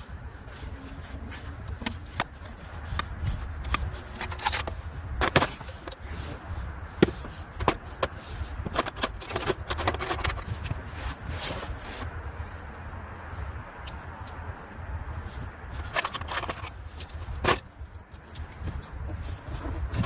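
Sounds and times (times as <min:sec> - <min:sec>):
steady low rumble: 0:00.0 - 0:20.0
hand tools clinking on metal: 0:01.8 - 0:06.2, 0:07.6 - 0:10.7, 0:15.8 - 0:18.6.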